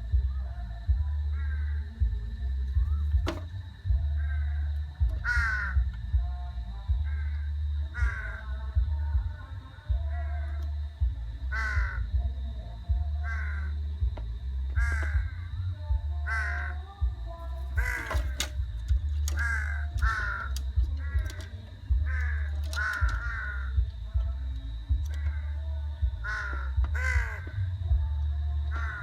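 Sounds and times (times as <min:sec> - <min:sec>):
low rumble: 0:00.0 - 0:29.0
crows cawing: 0:05.2 - 0:05.9, 0:07.1 - 0:08.5, 0:11.5 - 0:12.0, 0:13.2 - 0:13.7, 0:14.8 - 0:15.4, 0:16.3 - 0:16.8, 0:17.8 - 0:23.8, 0:26.2 - 0:27.6, 0:28.7 - 0:29.0.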